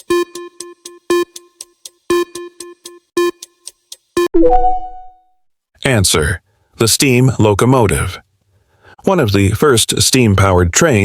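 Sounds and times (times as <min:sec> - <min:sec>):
electronic timer ticking: 0:00.0 - 0:05.0.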